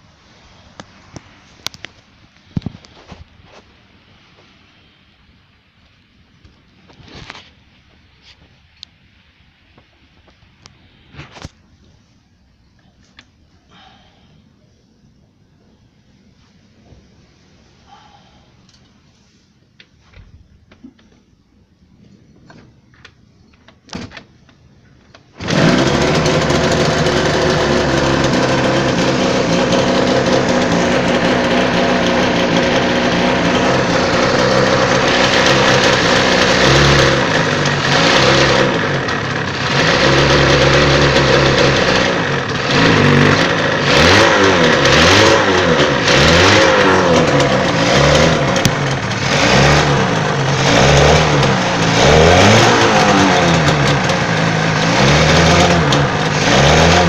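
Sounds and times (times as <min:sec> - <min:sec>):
two-stroke engine starting: 0:25.2 - 0:57.0
engine idling and revving: 0:25.3 - 0:57.0.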